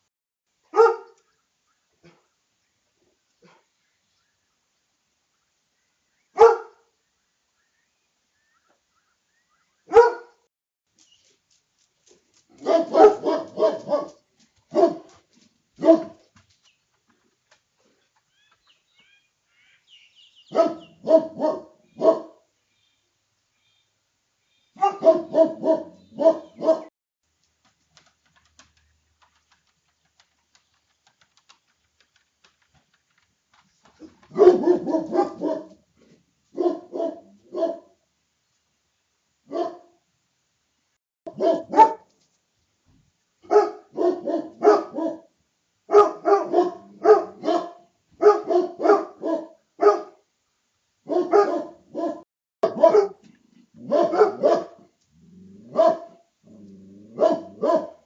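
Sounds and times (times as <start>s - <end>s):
dog barking: 0.7s - 1.2s, 6.4s - 6.9s, 9.9s - 10.5s, 12.6s - 15.2s, 15.8s - 16.3s, 20.5s - 22.4s, 24.8s - 26.9s, 34.0s - 35.8s, 36.6s - 38.0s, 39.5s - 40.0s, 41.3s - 42.1s, 43.4s - 45.3s, 45.9s - 50.2s, 51.0s - 53.2s, 53.8s - 54.9s, 55.7s - 56.3s, 57.1s - 58.0s.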